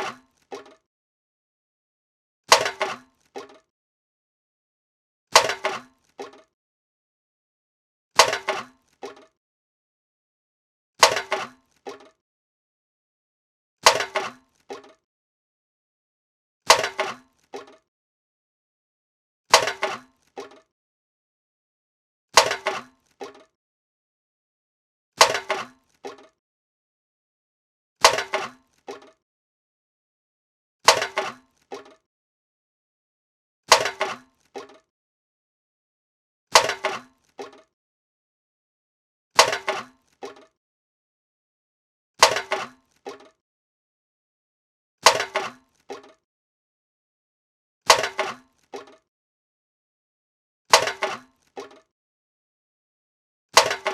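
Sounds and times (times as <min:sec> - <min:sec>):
metal can clattering and bouncing: 0:00.0 - 0:00.8, 0:02.5 - 0:03.7, 0:05.4 - 0:06.5, 0:08.2 - 0:09.4, 0:11.0 - 0:12.2, 0:13.8 - 0:15.0, 0:16.7 - 0:17.8, 0:19.5 - 0:20.7, 0:22.4 - 0:23.5, 0:25.2 - 0:26.4, 0:28.0 - 0:29.2, 0:30.9 - 0:32.0, 0:33.7 - 0:34.9, 0:36.6 - 0:37.7, 0:39.4 - 0:40.6, 0:42.2 - 0:43.4, 0:45.0 - 0:46.2, 0:47.9 - 0:49.0, 0:50.7 - 0:51.9, 0:53.6 - 0:53.9
metal can clanking: 0:02.5 - 0:03.6, 0:05.4 - 0:06.4, 0:08.2 - 0:09.3, 0:30.9 - 0:32.0, 0:33.7 - 0:34.8, 0:36.6 - 0:37.6, 0:39.4 - 0:40.5, 0:42.2 - 0:43.3, 0:45.0 - 0:46.2.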